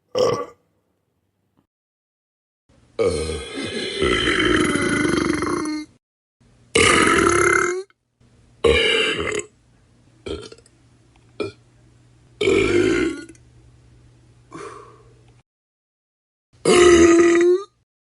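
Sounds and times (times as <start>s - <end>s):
person burping: 0.1s - 0.6s, 3.0s - 6.0s, 6.8s - 8.0s, 8.6s - 9.5s, 10.3s - 10.6s, 11.4s - 11.6s, 12.4s - 13.4s, 16.6s - 17.8s
faint low hum: 8.0s - 15.4s.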